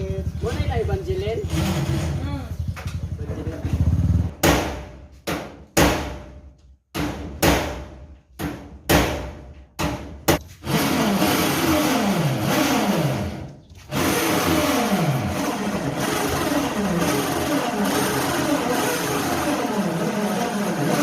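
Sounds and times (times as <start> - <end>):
sharp knocks: 4.3 - 10.4
power drill driving screws: 13.9 - 21.0.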